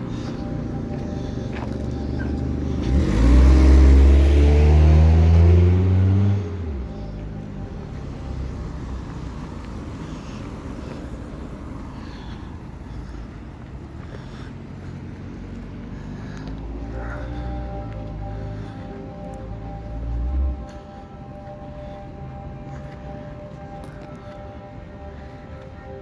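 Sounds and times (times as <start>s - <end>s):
steady background noise: 0.0s - 5.7s, 6.4s - 26.0s
deep horn-like drone: 0.0s - 9.7s, 16.2s - 26.0s.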